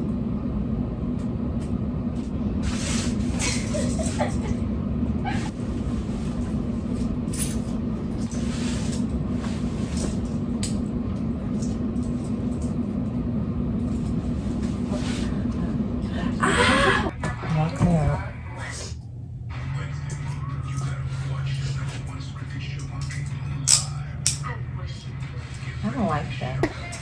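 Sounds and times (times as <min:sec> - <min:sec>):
car engine and road hum: 0:00.0 - 0:16.2.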